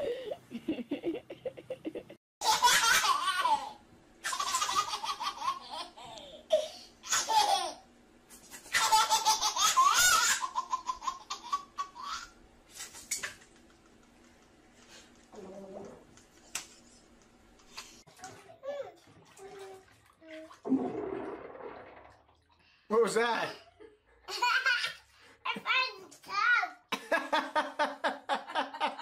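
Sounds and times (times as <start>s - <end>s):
baby laughing: 1.7s - 7.8s, 8.6s - 12.4s.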